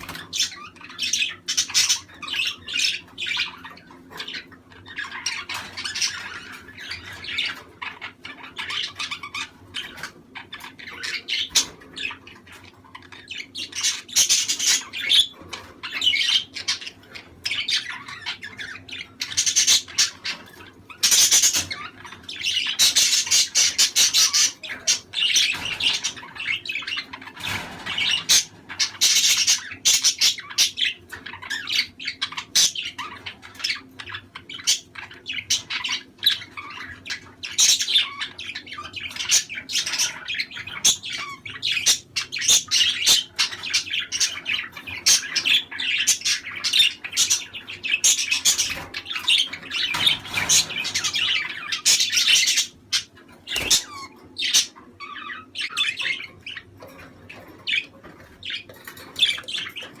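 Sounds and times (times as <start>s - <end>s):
budgerigars chattering: 0.0s - 60.0s.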